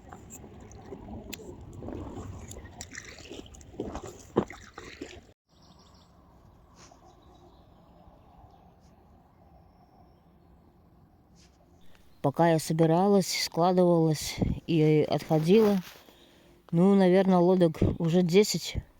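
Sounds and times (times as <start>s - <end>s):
water sloshing around boat: 0.0s - 5.4s.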